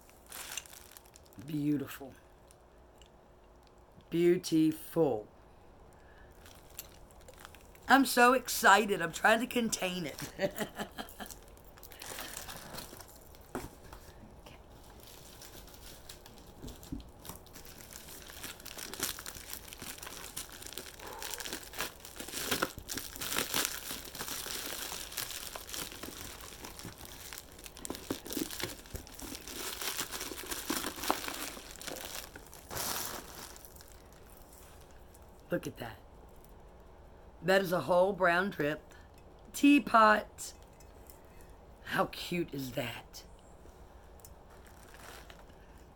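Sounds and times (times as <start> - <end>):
packing material crinkling: 0.0 - 1.5, 6.0 - 7.9, 10.1 - 35.4, 44.4 - 45.9.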